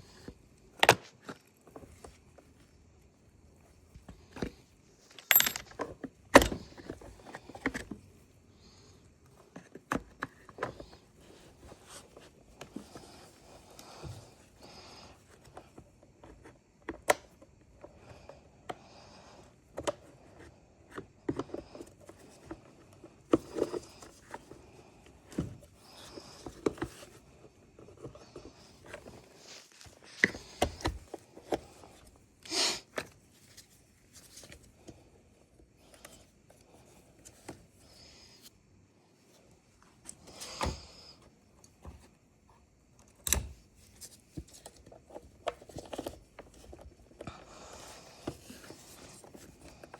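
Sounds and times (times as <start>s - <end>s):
hands handling chainsaw parts: 5.1s - 7.8s.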